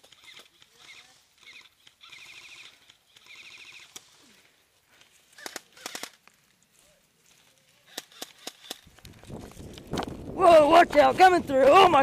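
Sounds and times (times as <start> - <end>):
airsoft gun automatic fire: 7.9 - 8.9.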